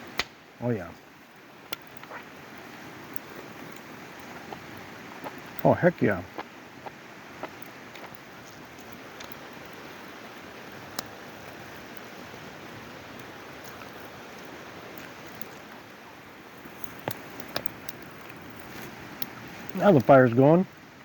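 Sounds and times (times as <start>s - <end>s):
sharp fire pops: 0.0s - 9.8s, 16.6s - 20.1s
campfire crackling: 0.0s - 21.0s
creek rushing: 0.0s - 21.0s.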